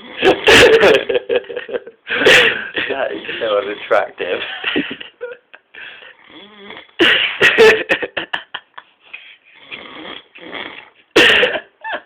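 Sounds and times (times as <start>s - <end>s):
man snoring: 6.2s - 7.0s, 9.6s - 10.9s.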